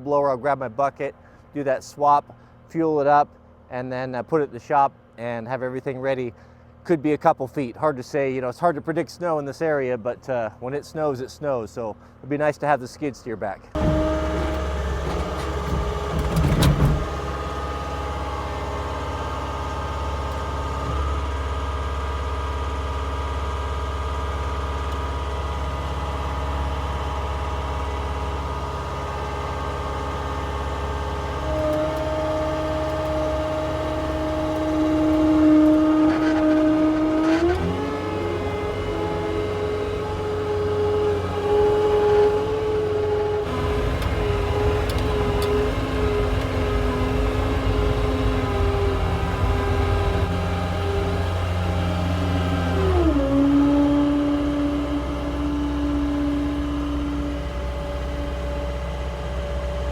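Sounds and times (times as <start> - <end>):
diesel engine running: 13.7 - 59.9
short clatter: 13.8 - 17.5
rising whine: 31.2 - 59.9.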